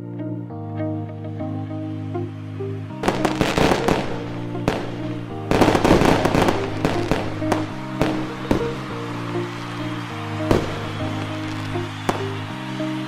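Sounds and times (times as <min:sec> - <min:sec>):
background music: 0:00.0 - 0:13.0
fireworks crackling: 0:03.0 - 0:13.0.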